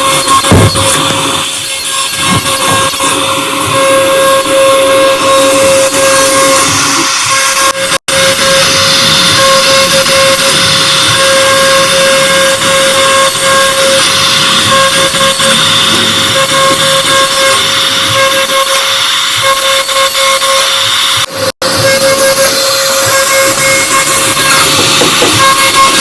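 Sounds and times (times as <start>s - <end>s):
router spindle whine: 0.0s - 26.0s.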